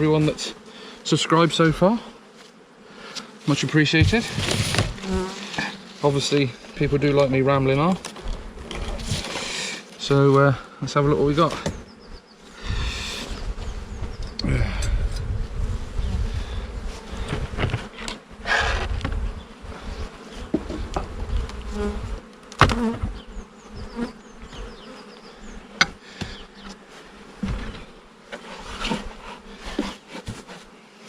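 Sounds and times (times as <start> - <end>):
honeybees buzzing: 0.0 - 31.0
wooden hive parts knocking: 3.9 - 5.7, 22.3 - 23.3.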